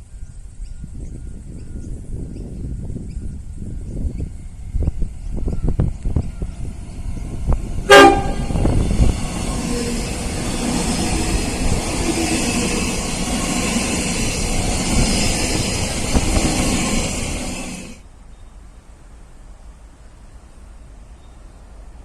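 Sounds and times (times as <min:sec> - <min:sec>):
passing train rail and engine noise: 0:00.0 - 0:22.0
train horn blast: 0:07.8 - 0:09.2.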